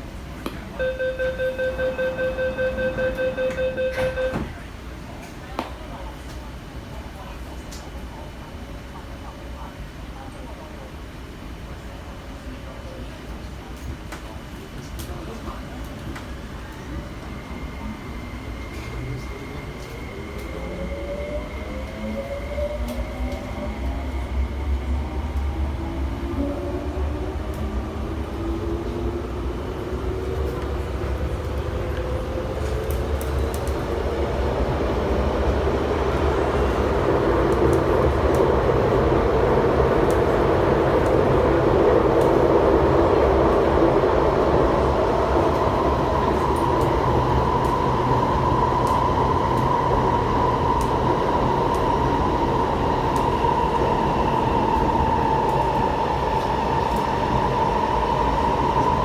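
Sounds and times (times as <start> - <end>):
wheel and track rumble: 18.6 - 59.0.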